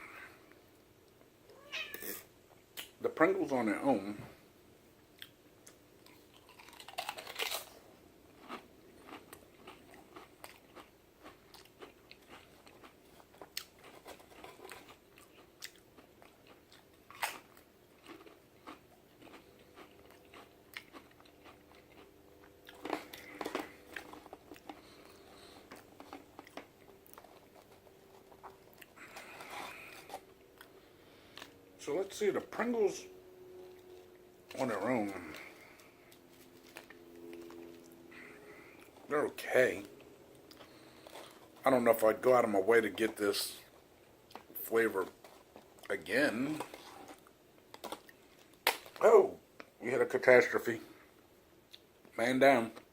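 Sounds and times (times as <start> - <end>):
man chewing crunchy chips: 5.1 - 31.6, 33.7 - 42.2, 42.9 - 49.7.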